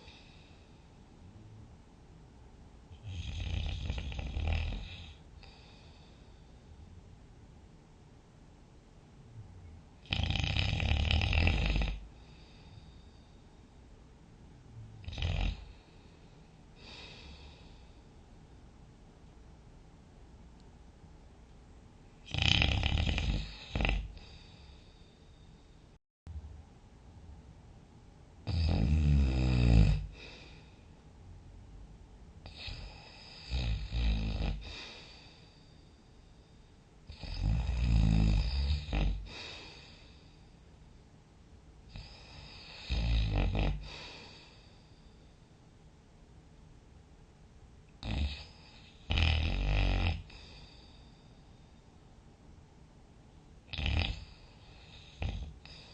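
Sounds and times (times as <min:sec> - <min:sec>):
faint breath: 0:00.0 - 0:01.6, 0:05.0 - 0:07.2, 0:12.0 - 0:14.0, 0:14.9 - 0:18.7, 0:23.4 - 0:26.0, 0:30.0 - 0:31.1, 0:34.5 - 0:37.3, 0:39.2 - 0:41.2, 0:43.8 - 0:45.9, 0:50.2 - 0:52.1, 0:54.1 - 0:55.9
loud snoring: 0:03.0 - 0:05.7, 0:10.0 - 0:12.1, 0:15.0 - 0:15.8, 0:22.2 - 0:24.4, 0:28.4 - 0:30.3, 0:32.5 - 0:35.2, 0:37.1 - 0:39.8, 0:41.9 - 0:44.4, 0:48.0 - 0:50.6, 0:53.7 - 0:55.9
rattling snore: 0:22.3 - 0:24.2.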